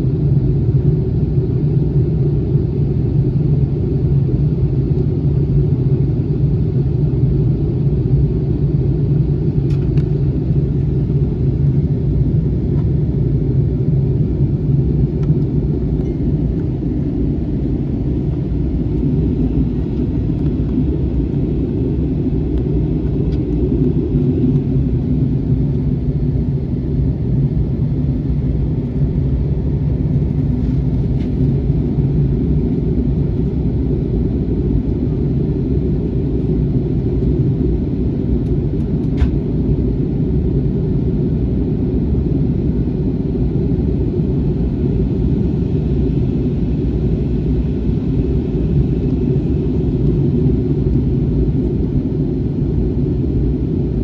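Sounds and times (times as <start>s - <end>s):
airplane cabin engine rumble: 0.0s - 54.0s.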